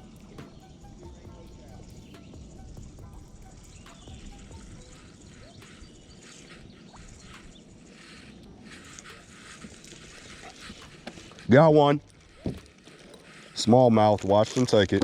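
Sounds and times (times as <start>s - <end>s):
faint bird chirps: 0.0s - 11.3s
steady outdoor background hiss: 0.0s - 15.0s.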